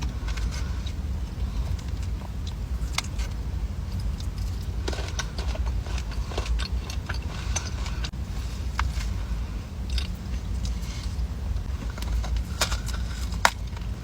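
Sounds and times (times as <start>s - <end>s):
steady low rumble: 0.0s - 14.0s
crisp pastry biting and chewing: 4.0s - 8.1s.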